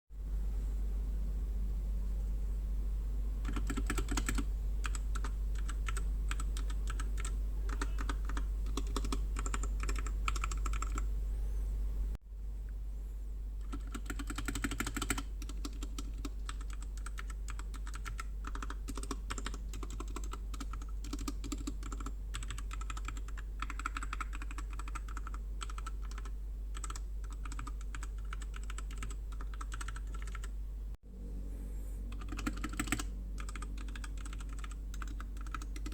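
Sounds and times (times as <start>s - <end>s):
mechanical keyboard typing: 3.4s - 11.1s, 13.6s - 30.5s, 32.1s - 35.9s.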